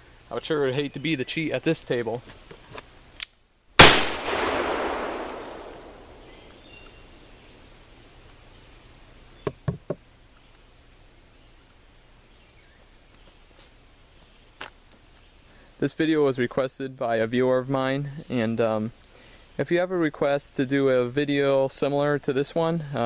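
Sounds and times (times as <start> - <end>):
revolver shot with echo: 3.8 - 6.8.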